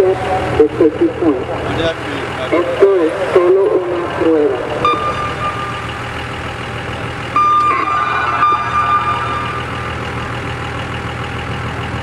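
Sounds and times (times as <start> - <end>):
vehicle engine idling: 0.0 - 12.0
high electronic tone: 2.6 - 10.6.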